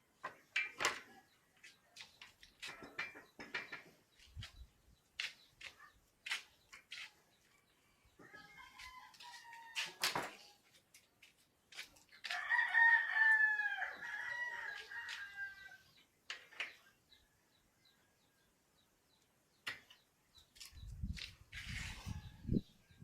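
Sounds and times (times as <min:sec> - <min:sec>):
rooster crowing: 0:12.3 - 0:15.8.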